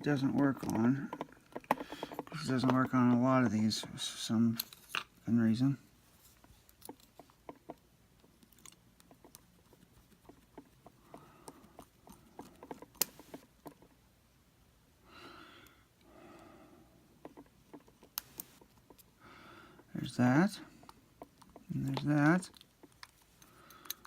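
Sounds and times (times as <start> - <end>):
small metallic clicks and taps: 6.4 - 14.0, 17.2 - 19.1, 20.8 - 24.0.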